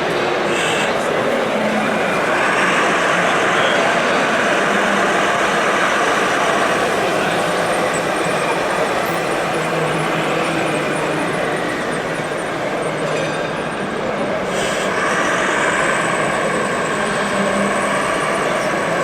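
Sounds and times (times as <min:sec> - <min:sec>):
dense background noise: 0:00.0 - 0:19.0
higher-pitched whine: 0:00.0 - 0:19.0.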